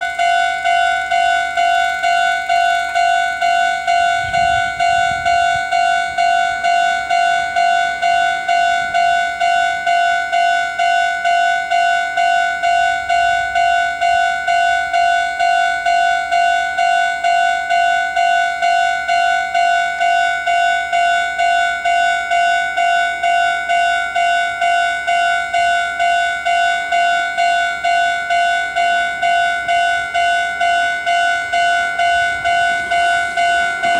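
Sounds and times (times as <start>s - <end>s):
level crossing warning bell: 0.0s - 33.9s.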